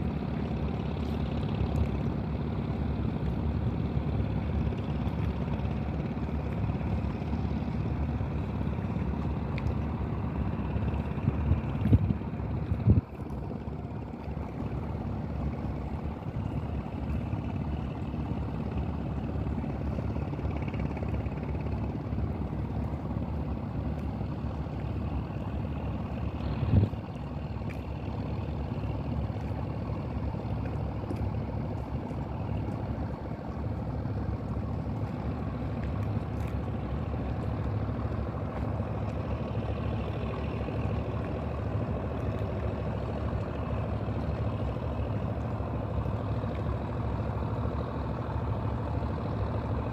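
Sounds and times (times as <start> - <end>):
boat diesel engine humming: 0.0 - 49.9.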